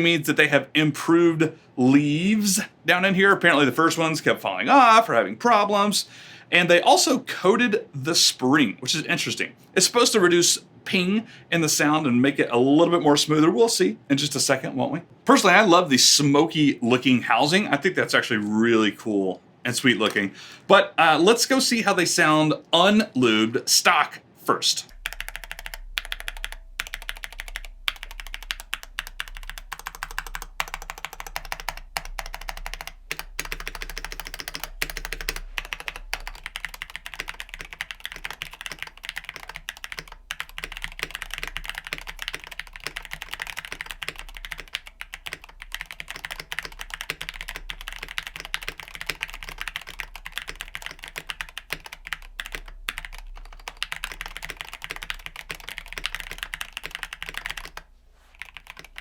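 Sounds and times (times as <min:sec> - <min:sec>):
mechanical keyboard typing: 0:25.0 - 0:57.8, 0:58.4 - 0:59.0.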